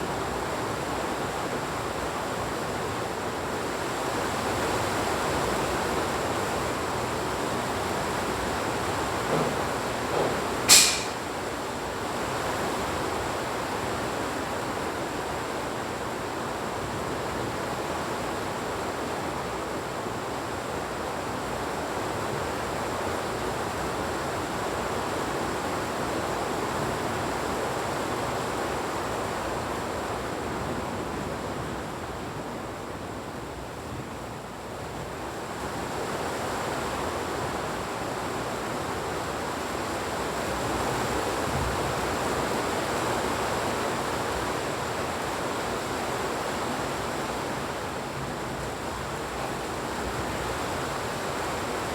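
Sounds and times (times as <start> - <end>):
short sharp crack: 10.7 - 11.3.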